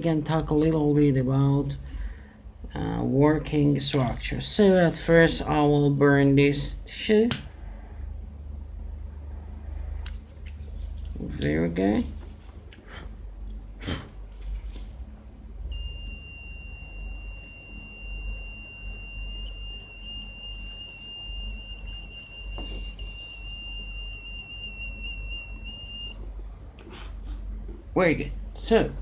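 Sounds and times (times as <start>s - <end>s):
smoke detector alarm tone: 15.7s - 26.2s.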